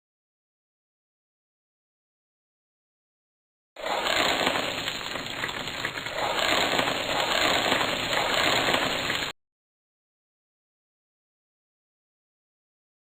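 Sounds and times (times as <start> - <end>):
dense crackling hiss: 3.8 - 9.3.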